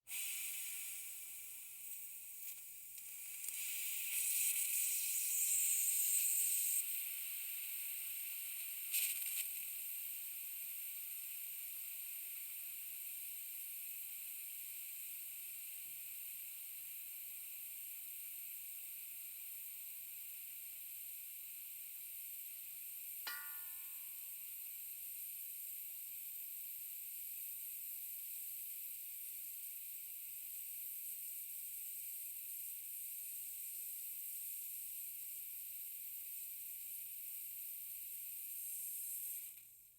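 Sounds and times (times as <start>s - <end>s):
brief metallic ping: 23.3s - 24.2s.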